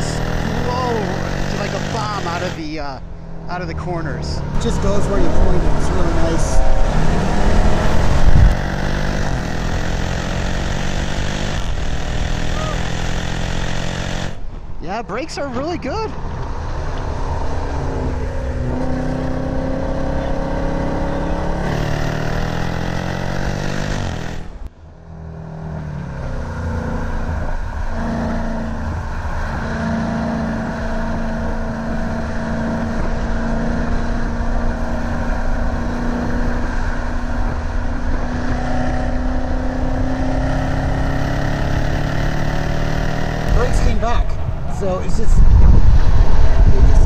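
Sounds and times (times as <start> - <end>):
car engine revving hard: 0.0 - 2.8, 3.5 - 14.4, 17.2 - 24.7, 25.6 - 47.0.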